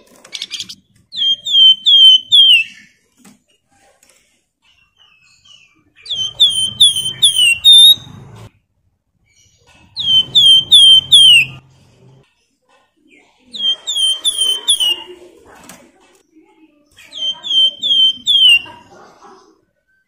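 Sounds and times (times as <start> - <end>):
bird singing flute-like whistles: 1.2 - 2.8, 6.1 - 8.1, 10.0 - 11.6, 13.6 - 15.1, 17.0 - 18.6.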